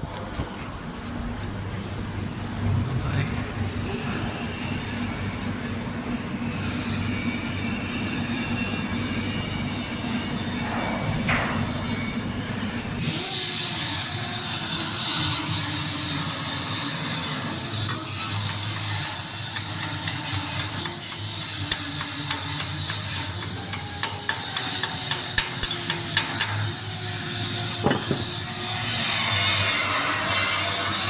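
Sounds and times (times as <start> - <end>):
welding sizzling hiss: 13.0 - 31.0.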